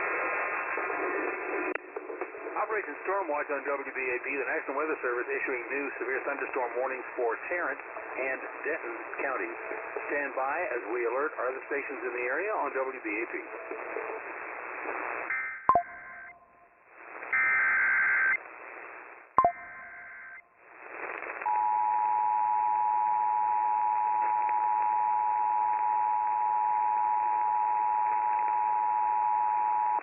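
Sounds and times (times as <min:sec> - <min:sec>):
two-tone attention signal: 0:15.3 - 0:16.3, 0:19.4 - 0:20.3.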